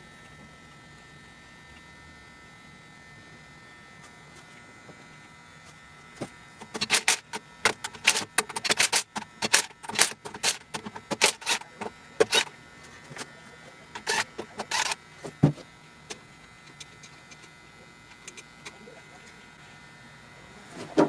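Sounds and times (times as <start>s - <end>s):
faint steady hum: 0.0s - 21.0s
sharp clicks and knocks: 6.2s - 12.5s.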